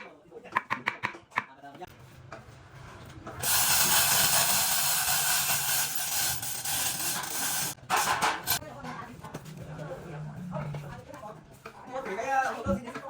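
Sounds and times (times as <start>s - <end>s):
power tool running: 3.4s - 7.8s.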